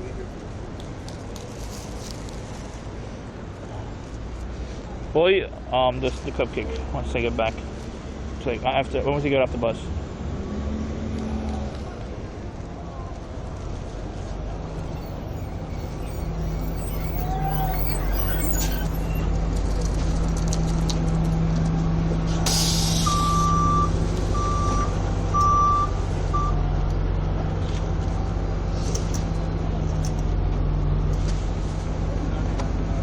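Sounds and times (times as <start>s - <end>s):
bus diesel engine running: 11.4s - 33.0s
short electronic beeps: 14.8s - 19.3s
air brake hiss: 22.3s - 23.6s.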